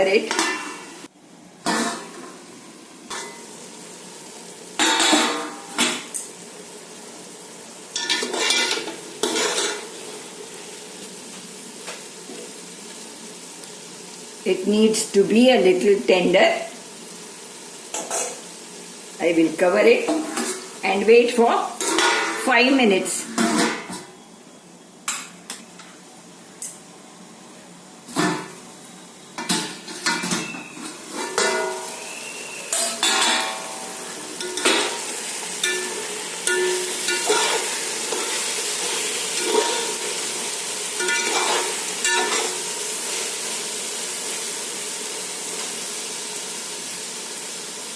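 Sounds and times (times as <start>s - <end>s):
chicken sizzling in pot: 0.0s - 47.9s
metal pots and utensils clanking: 0.1s - 0.9s, 1.6s - 2.4s, 3.1s - 3.5s, 4.8s - 6.3s, 7.9s - 10.0s, 17.9s - 18.4s, 20.0s - 20.8s, 21.8s - 22.5s, 23.2s - 24.2s, 28.1s - 28.6s, 29.4s - 40.2s, 41.0s - 42.8s.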